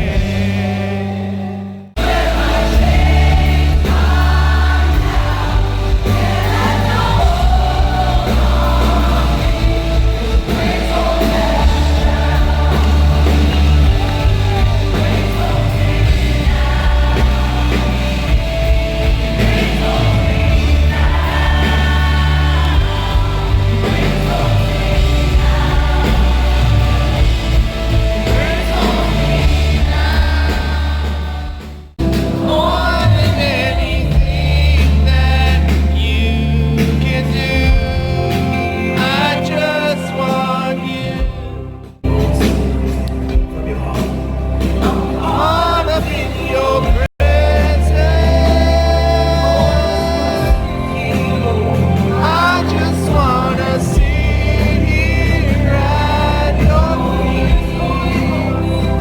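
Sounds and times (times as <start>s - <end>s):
live worship band: 0.0s - 59.0s
voices singing together: 0.0s - 59.0s
heavy sustained bass: 2.0s - 36.6s.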